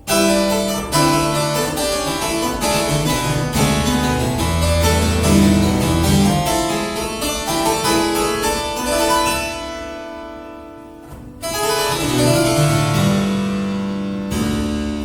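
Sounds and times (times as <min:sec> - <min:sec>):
solo harpsichord playing: 0:00.0 - 0:15.0.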